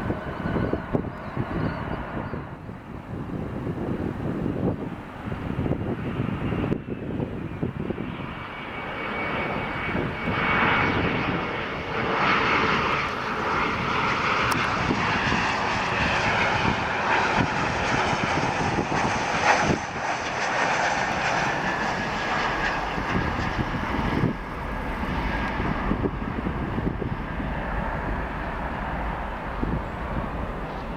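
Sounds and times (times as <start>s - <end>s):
jet engines passing: 0.0s - 30.9s.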